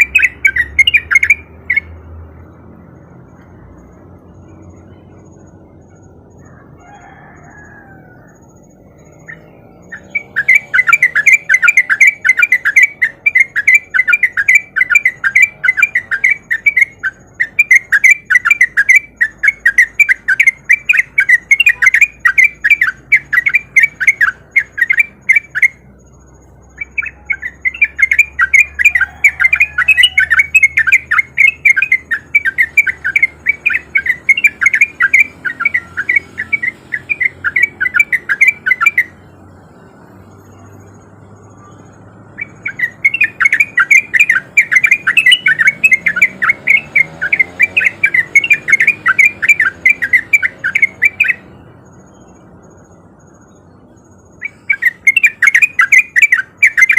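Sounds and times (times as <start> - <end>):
bulbul singing chattering notes: 0.0 - 6.4, 8.4 - 56.9.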